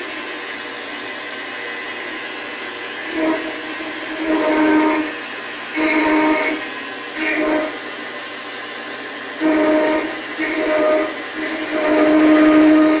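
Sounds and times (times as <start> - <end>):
metal lathe humming: 0.0 - 13.0
metal cut squealing: 2.8 - 8.0, 9.3 - 13.0.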